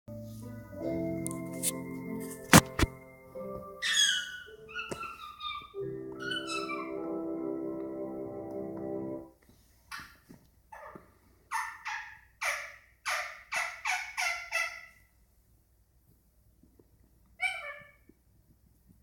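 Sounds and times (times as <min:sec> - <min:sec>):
parakeet chattering: 0:03.8 - 0:07.1, 0:11.5 - 0:14.9.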